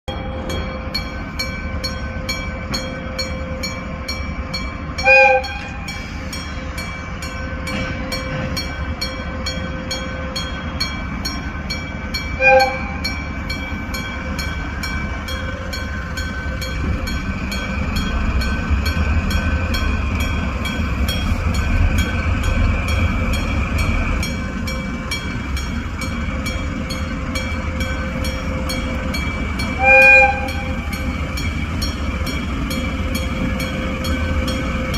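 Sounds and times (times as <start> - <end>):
diesel locomotive rumble: 0.1 - 34.9
train horn toots: 5.0 - 5.9, 12.4 - 13.1, 29.7 - 31.0.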